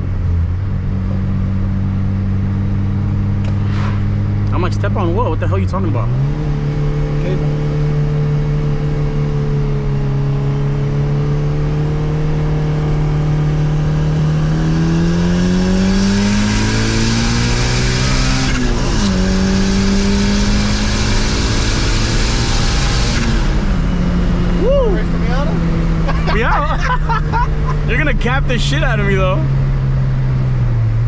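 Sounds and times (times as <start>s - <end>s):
car engine revving: 0.0s - 31.0s
rushing noise: 3.4s - 4.5s.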